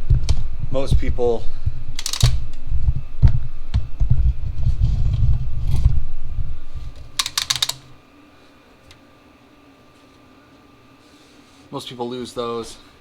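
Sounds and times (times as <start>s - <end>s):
faint steady hum: 0.0s - 13.0s
handling knocks and clicks: 2.0s - 6.0s, 6.9s - 8.0s.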